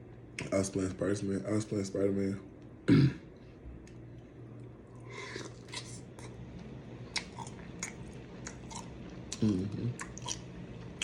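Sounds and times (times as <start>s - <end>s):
wet chewing and lip-smacking: 7.1s - 11.0s.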